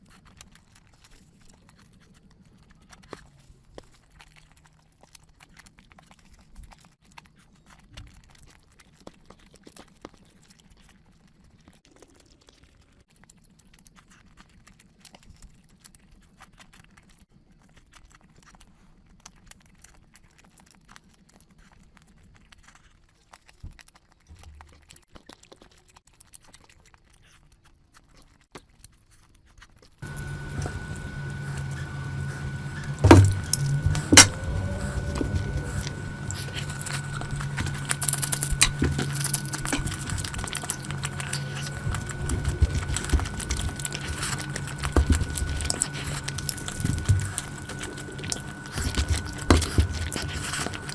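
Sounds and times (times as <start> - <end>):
chewing with wet smacks: 30.0 - 50.9.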